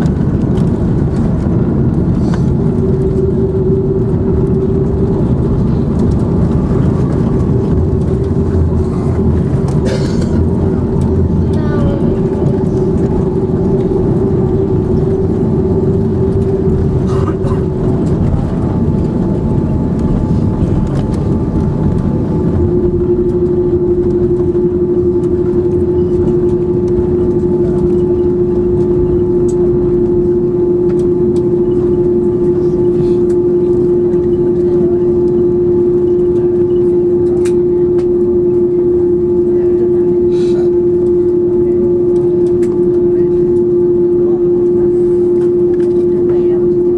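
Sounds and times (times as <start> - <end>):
airliner cabin rumble: 0.0 - 46.9
jet engine whine: 0.0 - 46.9.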